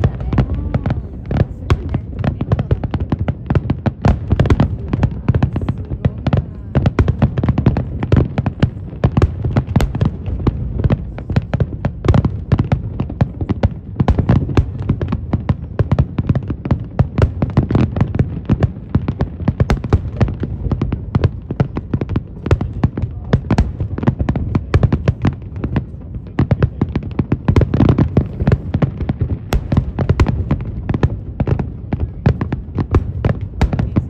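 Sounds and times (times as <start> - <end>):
fireworks crackling and popping: 0.0 - 34.0.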